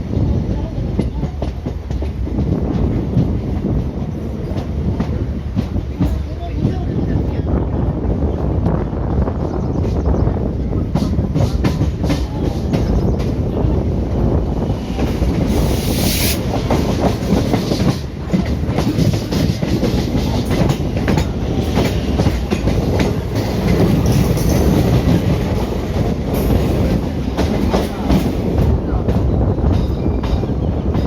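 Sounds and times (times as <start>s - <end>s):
train coach rumbling: 0.0s - 31.0s
brief hiss: 15.4s - 16.5s.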